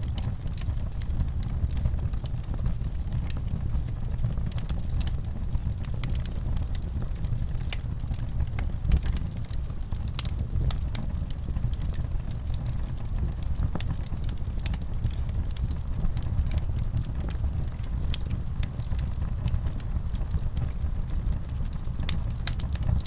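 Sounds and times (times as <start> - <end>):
logs crackling and popping: 0.0 - 23.0
wood fire rumbling: 0.0 - 23.0.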